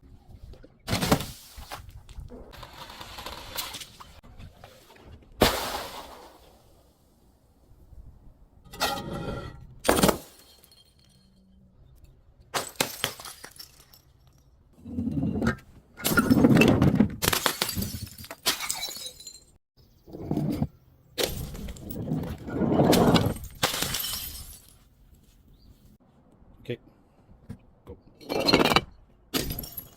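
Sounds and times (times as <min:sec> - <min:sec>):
glass bottles breaking: 0:09.9 - 0:11.5, 0:12.6 - 0:14.3, 0:16.0 - 0:19.6, 0:23.2 - 0:24.8, 0:28.3 - 0:29.9
clatter of glass shards: 0:10.0 - 0:11.6, 0:23.2 - 0:24.8.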